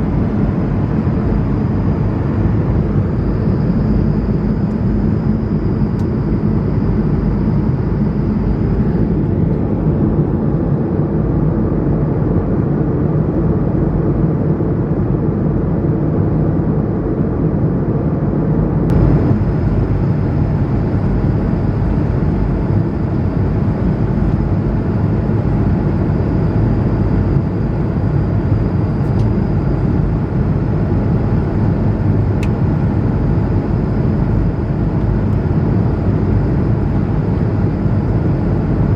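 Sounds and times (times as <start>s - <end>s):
faint high whine: 0.0s - 10.8s, 18.9s - 38.9s
airliner cabin rumble: 0.0s - 38.9s.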